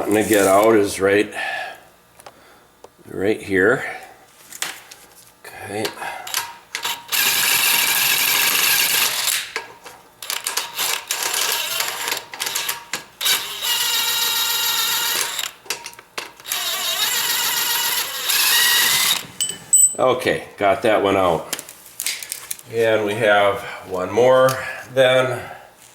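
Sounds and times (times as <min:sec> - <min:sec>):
power tool spinning: 0:06.8 - 0:09.4, 0:10.2 - 0:15.6, 0:16.4 - 0:19.6.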